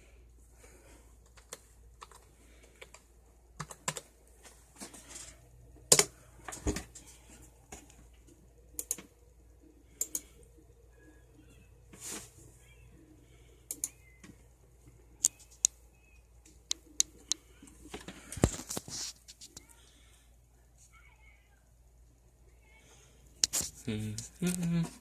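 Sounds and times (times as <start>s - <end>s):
typing on computer keyboard: 1.2s - 3.0s, 3.6s - 4.1s.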